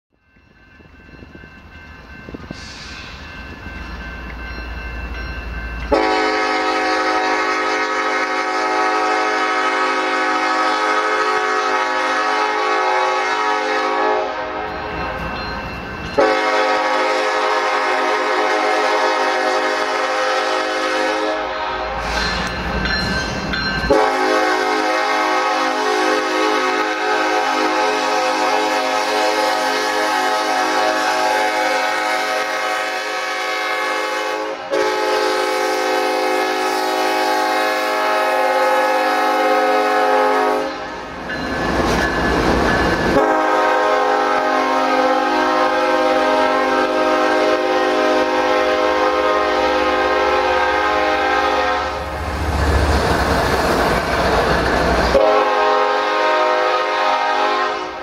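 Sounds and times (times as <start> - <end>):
passing train rumble: 0.1 - 58.0
locomotive air horn blasts: 5.9 - 14.8, 16.2 - 22.2, 23.9 - 40.9, 43.2 - 52.2, 55.1 - 58.0.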